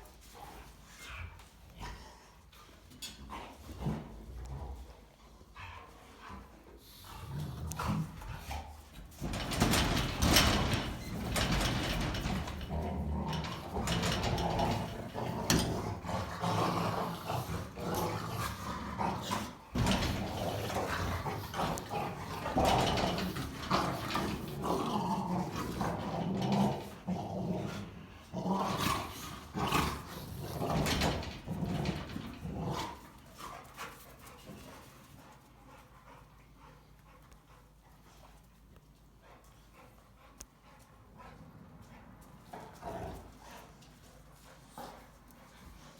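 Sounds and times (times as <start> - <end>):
dogs growling: 3.0 - 33.7, 42.5 - 43.8.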